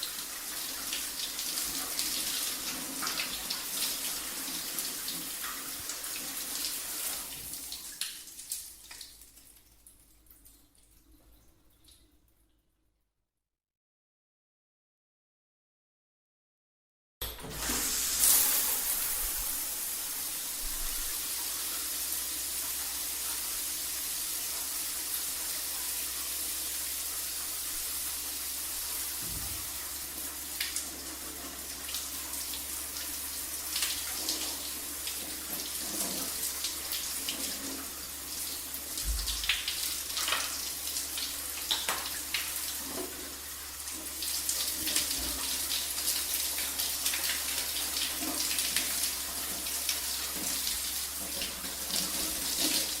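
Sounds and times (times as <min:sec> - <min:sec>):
shower spray hissing: 0:17.5 - 0:30.8
water splashes and spatters: 0:39.0 - 0:40.6.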